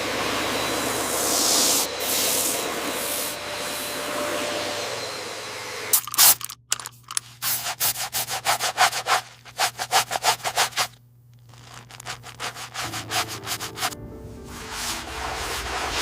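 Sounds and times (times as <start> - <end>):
brush scrubbing leather: 7.1 - 14.0, 14.6 - 16.0.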